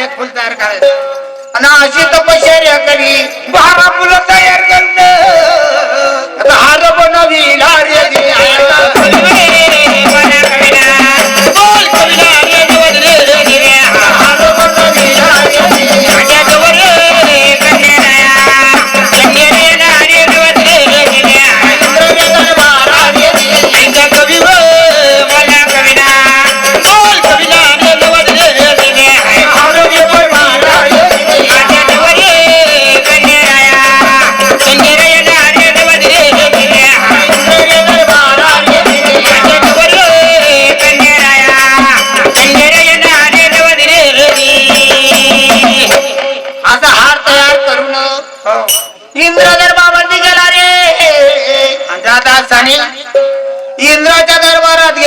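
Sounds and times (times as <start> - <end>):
fast dense percussion: 6.4 - 47.8.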